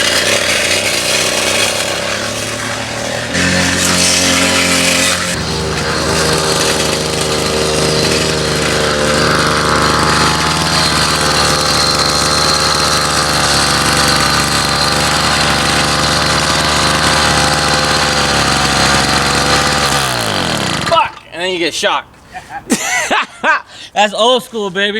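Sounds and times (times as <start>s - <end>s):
two-stroke engine idling: 0.0s - 21.1s.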